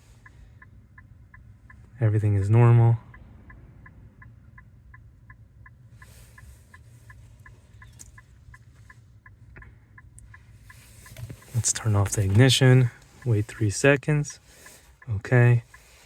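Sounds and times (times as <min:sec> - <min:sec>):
faint rustling: 0:10.2 - 0:15.0.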